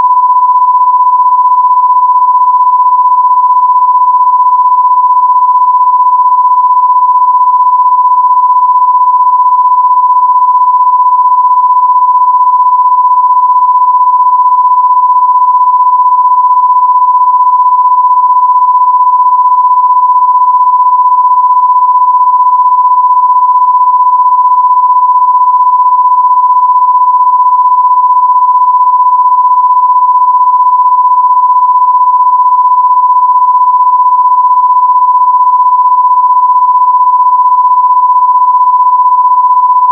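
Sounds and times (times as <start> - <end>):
electronic sine-wave tone: 0.0 - 39.9.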